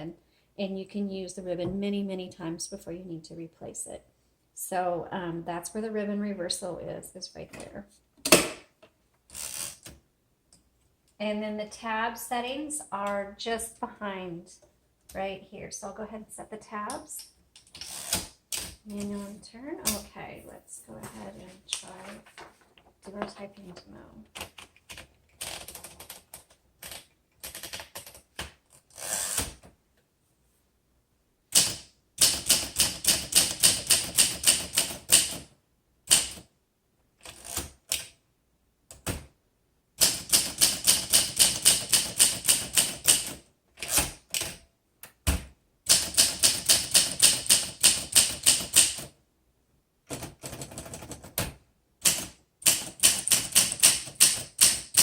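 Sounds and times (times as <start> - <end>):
manual typewriter typing: 24.3 - 29.6, 31.6 - 35.5, 40.0 - 44.6, 45.9 - 49.1, 50.1 - 51.4, 52.0 - 55.0.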